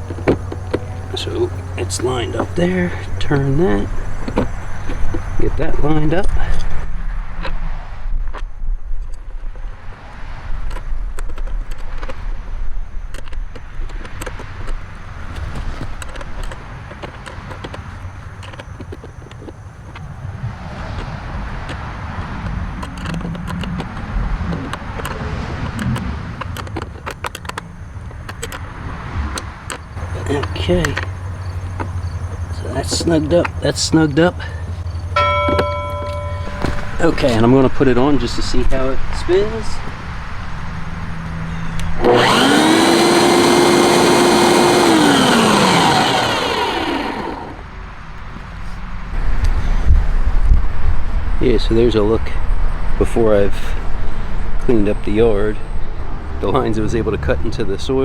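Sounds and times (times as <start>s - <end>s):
passing vehicle rushing: 0.0s - 8.2s, 28.5s - 42.5s
electric dethatcher motor whine: 30.0s - 37.3s, 41.1s - 47.6s.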